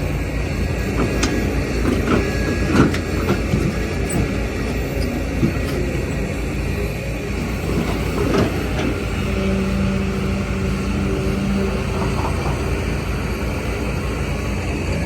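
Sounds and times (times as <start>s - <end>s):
heavy diesel rumble: 0.0s - 15.0s
metallic clanks and knocks: 1.0s - 6.2s.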